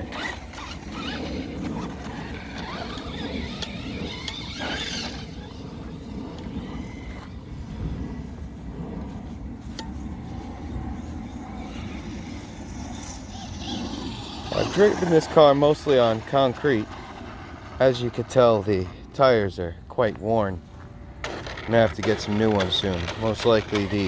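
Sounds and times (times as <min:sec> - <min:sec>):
electric motor whining: 0:00.0 - 0:07.5, 0:11.2 - 0:19.0, 0:21.2 - 0:24.0
tyres running over dirt: 0:00.0 - 0:07.5, 0:11.7 - 0:24.0.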